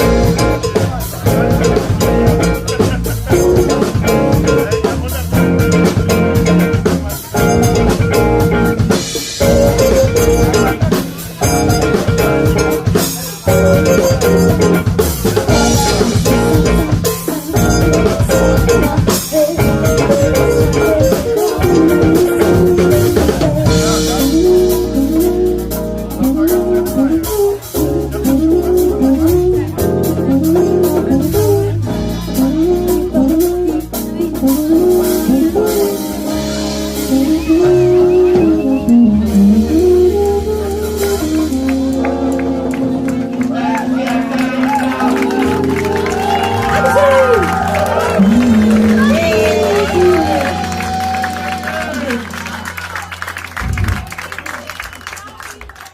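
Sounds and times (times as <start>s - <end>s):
guitar phrase with sliding notes: 0.0s - 12.9s, 45.1s - 54.0s
drum kit: 0.0s - 55.2s.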